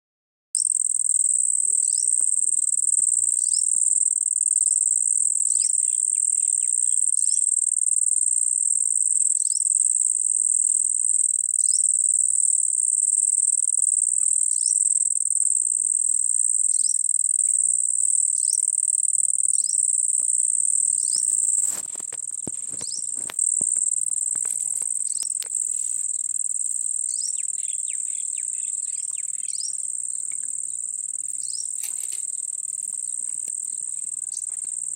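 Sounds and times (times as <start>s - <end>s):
high-pitched insect drone: 0.6s - 34.9s.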